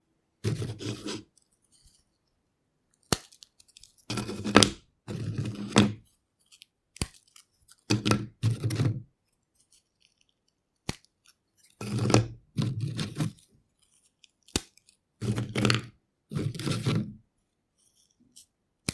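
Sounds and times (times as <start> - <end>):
crisps snapping sharply: 3.1 - 3.4.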